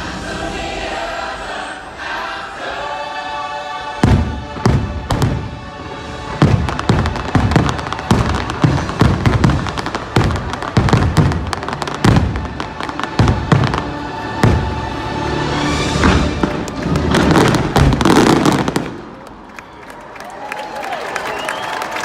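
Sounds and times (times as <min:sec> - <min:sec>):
orchestral music: 0:00.0 - 0:19.5
fireworks bursting: 0:04.0 - 0:19.2.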